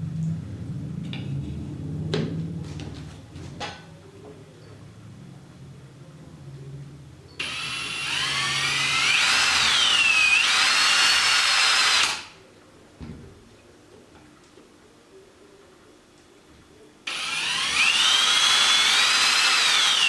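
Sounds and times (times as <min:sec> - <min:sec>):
power drill whining: 0:07.4 - 0:12.3, 0:17.1 - 0:20.0.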